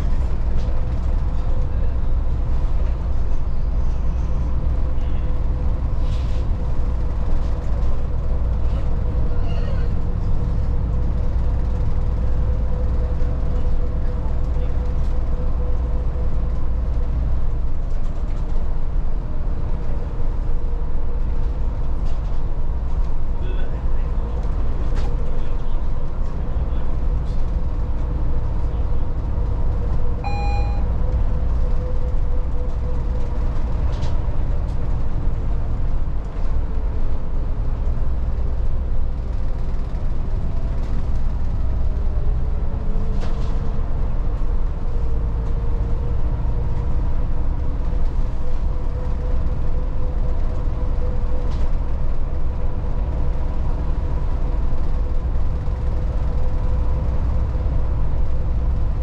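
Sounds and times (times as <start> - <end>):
bus engine and road rumble: 0.0 - 59.0
short electronic beep: 30.2 - 30.9.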